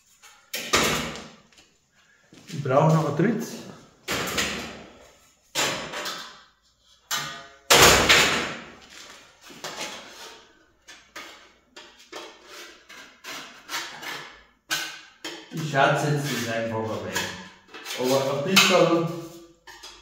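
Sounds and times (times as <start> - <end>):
sheet metal knocks and clanks: 5.5 - 6.4, 7.1 - 8.7.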